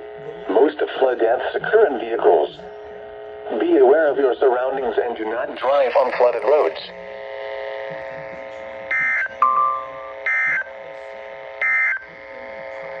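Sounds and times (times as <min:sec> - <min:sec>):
steady droning chord: 0:05.6 - 0:13.0
harsh digital data bursts: 0:08.9 - 0:10.8.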